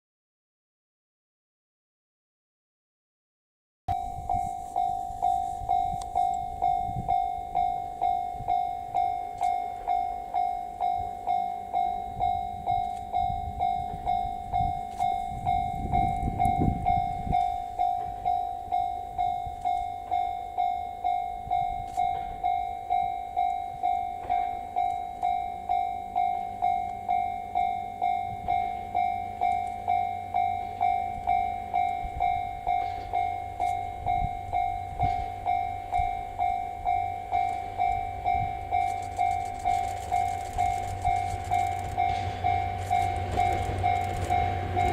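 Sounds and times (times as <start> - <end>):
level crossing alarm dinging: 3.9 - 44.9
low rumble: 37.6 - 44.9.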